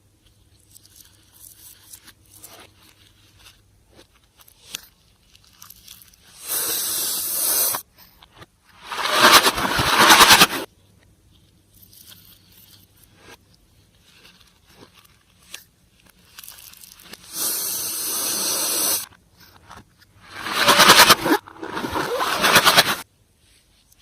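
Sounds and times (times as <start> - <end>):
steady hiss: 6.3 - 7.8, 17.2 - 19.1.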